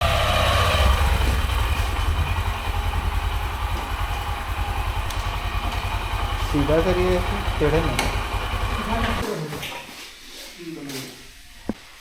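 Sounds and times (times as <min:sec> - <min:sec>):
motorcycle engine idling: 0:00.0 - 0:09.2.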